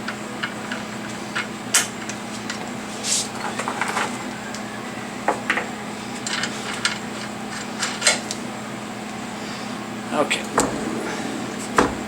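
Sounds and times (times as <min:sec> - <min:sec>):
steady low hum: 0:09.2 - 0:12.0.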